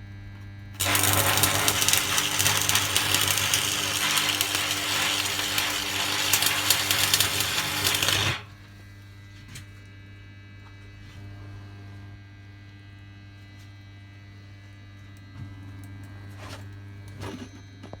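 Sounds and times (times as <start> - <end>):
welding arc crackling: 0.8 - 8.6
welder transformer humming: 0.8 - 8.8.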